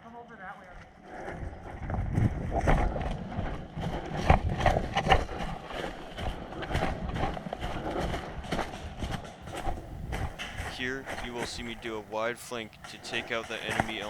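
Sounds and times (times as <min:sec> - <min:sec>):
wind rumble on microphone: 0:00.2 - 0:14.0
footsteps running over leaves: 0:09.5 - 0:14.0.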